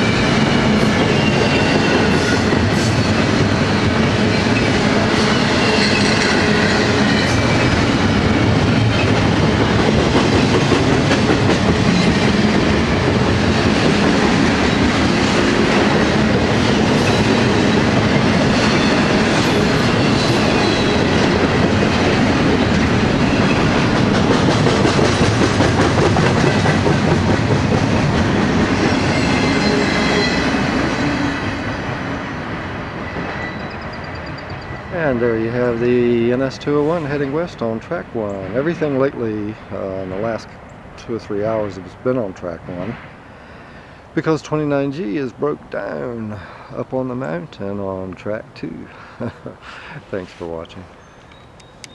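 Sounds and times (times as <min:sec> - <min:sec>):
clickety-clack of train wheels: 0:00.0 - 0:35.8
train rumbling past: 0:00.0 - 0:51.9.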